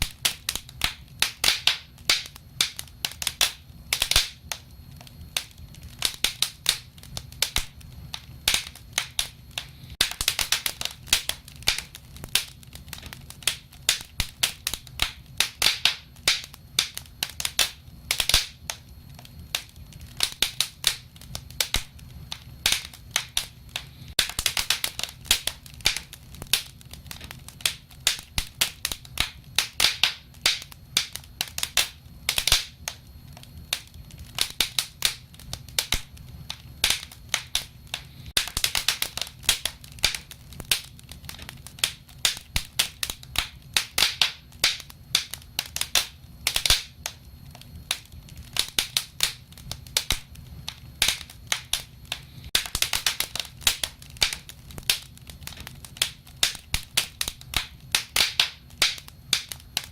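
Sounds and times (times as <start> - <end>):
low steady hum: 0.0 - 59.9
wood fire crackling: 0.0 - 59.9.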